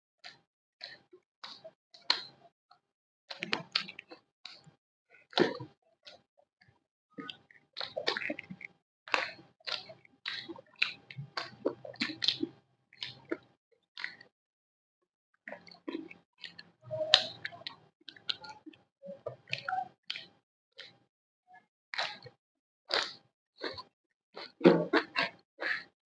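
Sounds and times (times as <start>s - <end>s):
person chewing crunchy snacks: 22.9s - 23.8s.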